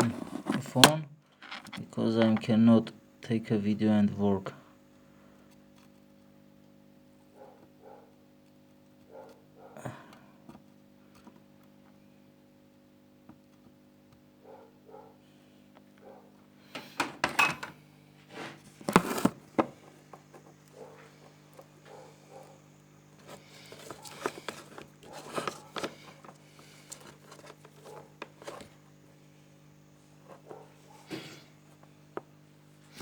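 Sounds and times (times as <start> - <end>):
handling clicks and knocks: 0.4 - 2.5, 23.2 - 28.7.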